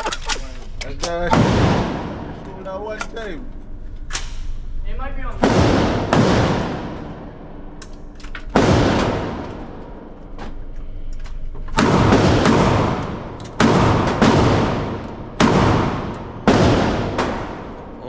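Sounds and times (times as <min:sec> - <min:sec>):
gunshots with long echo: 0:01.3 - 0:02.4, 0:05.4 - 0:07.8, 0:08.5 - 0:10.1, 0:11.7 - 0:18.0.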